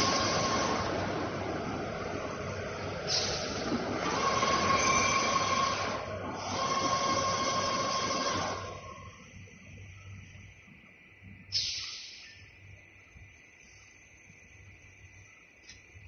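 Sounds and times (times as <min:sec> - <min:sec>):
welding machine whining: 0:00.0 - 0:10.4.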